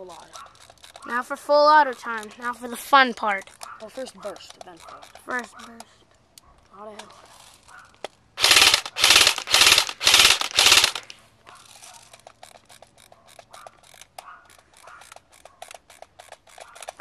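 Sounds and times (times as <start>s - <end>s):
magazine wind-up wheel clicking: 0.1s - 5.8s, 8.4s - 17.0s
airsoft rifle bursts: 8.4s - 12.2s.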